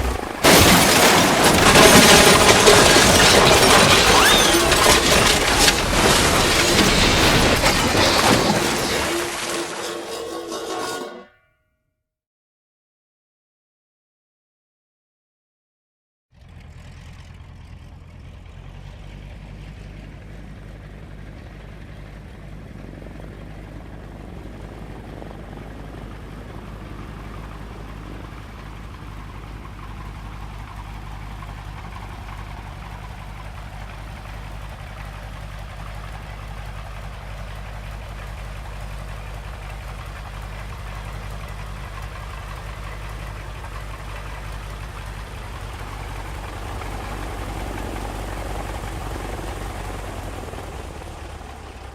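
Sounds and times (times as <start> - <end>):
propeller aircraft engine humming: 16.5 - 51.9.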